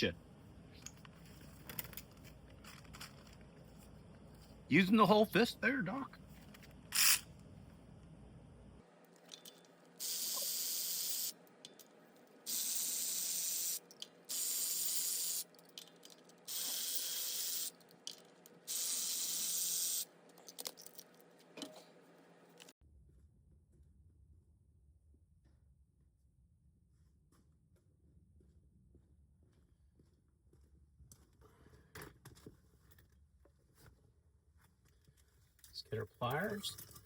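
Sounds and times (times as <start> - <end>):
aerosol spray can hissing: 10.0 - 11.3, 12.5 - 15.4, 16.5 - 17.7, 18.7 - 20.1.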